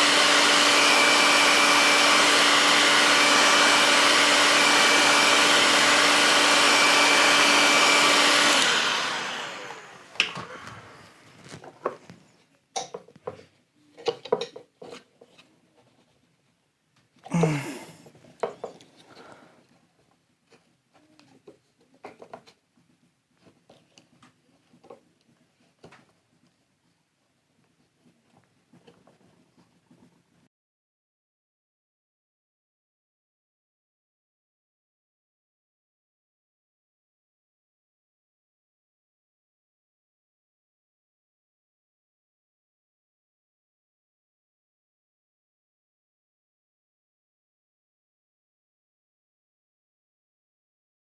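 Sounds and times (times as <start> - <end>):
heat gun blowing: 0.0 - 11.6, 17.3 - 17.9.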